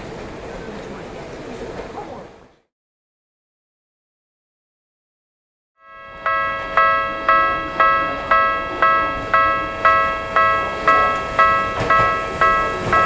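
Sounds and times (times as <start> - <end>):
level crossing alarm bell ringing: 5.8 - 13.0.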